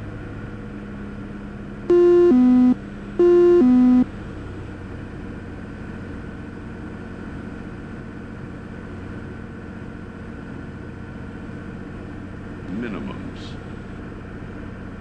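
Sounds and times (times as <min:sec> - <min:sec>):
aircraft engine droning in cabin: 0:00.0 - 0:15.0
faint high tone: 0:01.9 - 0:04.1.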